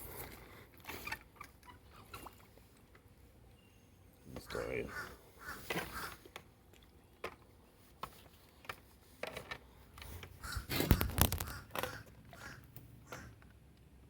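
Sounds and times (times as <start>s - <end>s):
blackbirds calling harshly: 4.4s - 6.3s, 10.4s - 13.4s.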